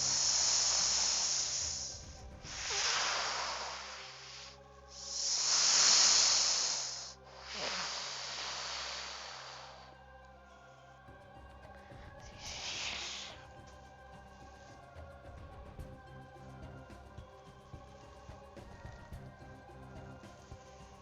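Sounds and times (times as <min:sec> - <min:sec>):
hissing noise: 0:00.0 - 0:10.0, 0:12.1 - 0:14.9
faint background music: 0:00.0 - 0:21.0.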